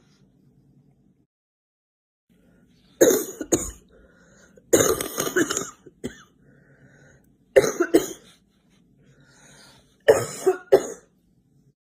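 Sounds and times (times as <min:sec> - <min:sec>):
faint breathing: 0:02.3 - 0:03.0, 0:03.8 - 0:04.7, 0:06.3 - 0:07.5, 0:08.2 - 0:10.1
girl coughing: 0:03.0 - 0:03.9, 0:04.7 - 0:06.4, 0:07.6 - 0:08.3, 0:10.0 - 0:11.1.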